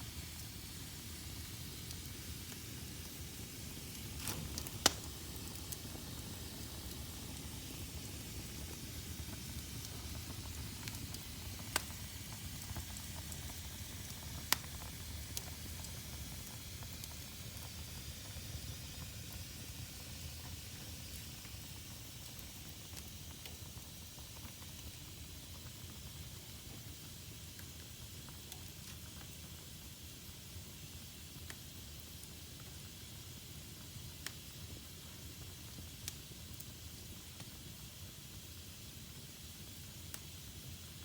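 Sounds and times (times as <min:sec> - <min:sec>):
fire hissing and crackling: 0:00.0 - 0:41.0
sharp pops of fire: 0:00.2 - 0:25.5.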